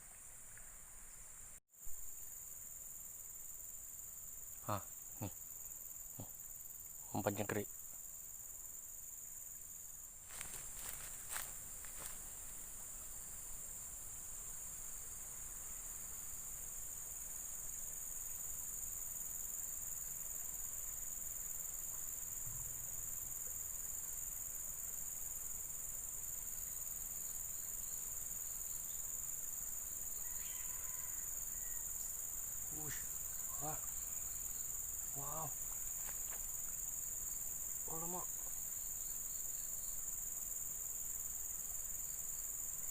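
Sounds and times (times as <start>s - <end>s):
high-pitched insect chorus: 0.0s - 42.9s
faint short calls: 32.7s - 34.0s, 35.1s - 35.8s.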